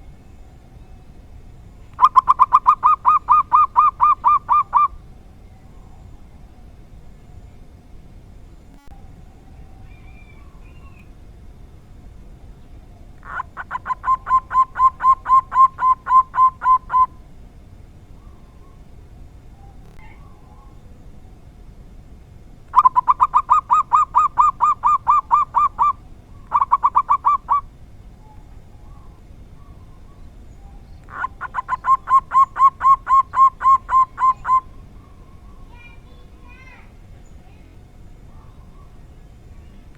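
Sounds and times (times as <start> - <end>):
dove cooing: 2.0 - 7.5, 12.8 - 21.3, 22.7 - 39.9.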